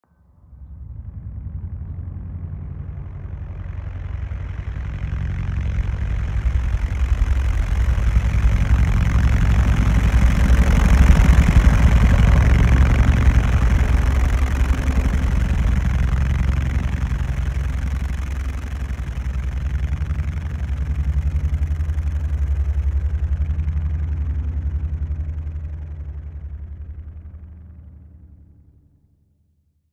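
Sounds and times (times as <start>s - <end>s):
deep engine rumble: 0.2s - 28.8s
helicopter rotor chopping: 0.8s - 28.3s.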